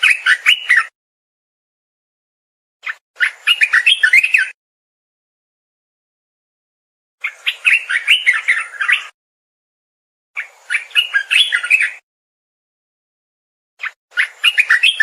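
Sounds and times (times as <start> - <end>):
bird singing warbling notes: 2.8 - 4.6, 7.2 - 9.2, 10.4 - 12.0, 13.8 - 15.0.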